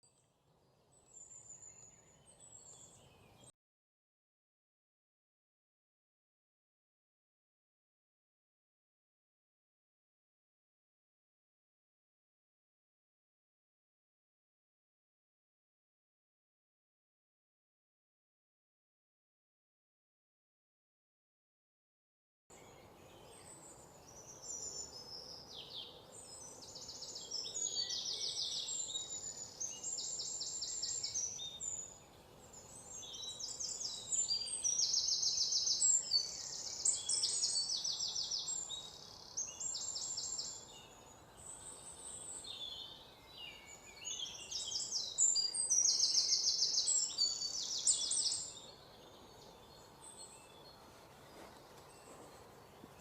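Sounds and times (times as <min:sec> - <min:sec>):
small birds singing: 0:00.0 - 0:03.5, 0:22.5 - 0:53.0.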